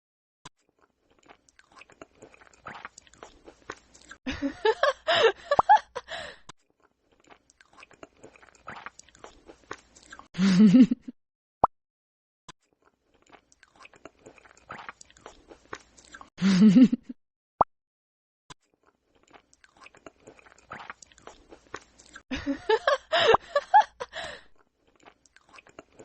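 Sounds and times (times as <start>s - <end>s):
person chewing crunchy food: 0.6s - 4.2s, 6.6s - 10.3s, 12.6s - 16.3s, 18.6s - 22.2s, 23.9s - 26.0s.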